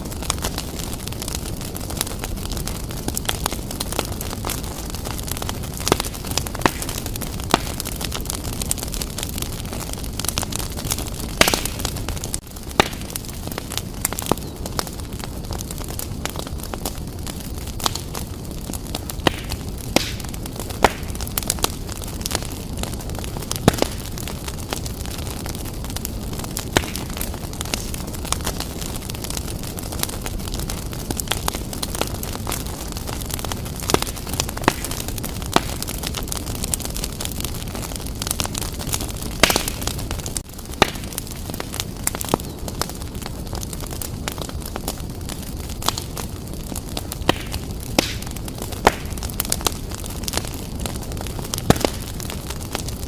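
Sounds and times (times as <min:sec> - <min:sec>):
fire crackling and popping: 0:00.0 - 0:53.0.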